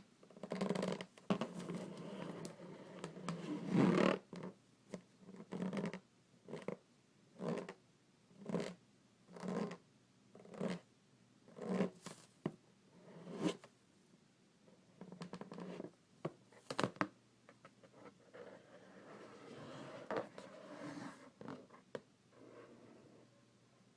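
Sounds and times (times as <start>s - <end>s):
scratches and taps on balloon: 0.2s - 6.8s, 7.4s - 7.8s, 8.4s - 9.8s, 10.4s - 10.9s, 15.0s - 18.7s.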